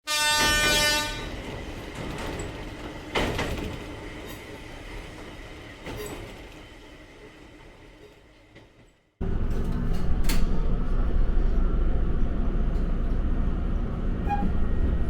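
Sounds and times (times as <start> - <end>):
train horn: 0.0 - 1.4
train running: 0.1 - 15.0.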